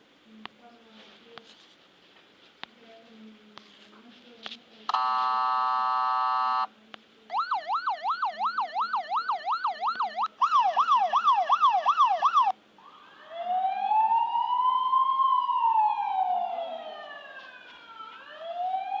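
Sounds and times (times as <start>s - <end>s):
electronic siren wail: 4.9s - 6.7s, 7.3s - 19.0s
electronic siren yelp: 4.9s - 6.7s, 7.3s - 19.0s.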